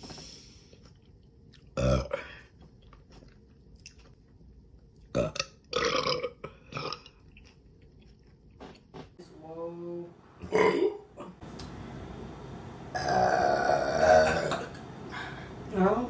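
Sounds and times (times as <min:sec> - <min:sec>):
woman burping loudly: 0:05.2 - 0:07.1, 0:10.4 - 0:11.3, 0:13.0 - 0:14.8.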